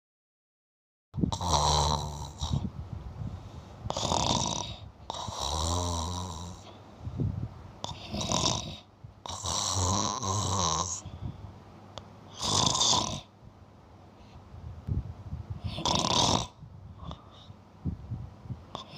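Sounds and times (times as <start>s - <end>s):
cat snoring: 1.3s - 2.7s, 3.9s - 6.8s, 7.8s - 11.1s, 12.3s - 13.3s, 15.6s - 17.4s.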